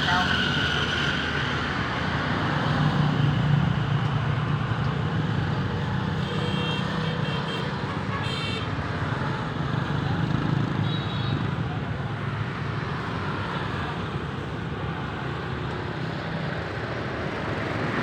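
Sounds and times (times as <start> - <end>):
vehicle engines rumbling: 0.0 - 6.0.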